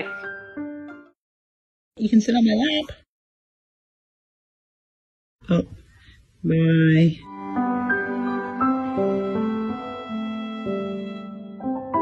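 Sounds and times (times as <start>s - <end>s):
slow piano chords: 7.3s - 12.0s.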